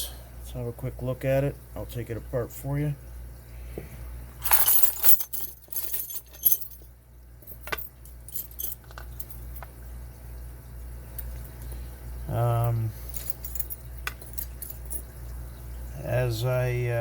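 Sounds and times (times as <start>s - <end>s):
padlock metal clinks and scraping: 4.4s - 6.8s, 7.5s - 9.6s, 13.0s - 15.0s
small metal parts clicking: 4.4s - 6.8s, 7.5s - 9.7s, 12.6s - 15.0s.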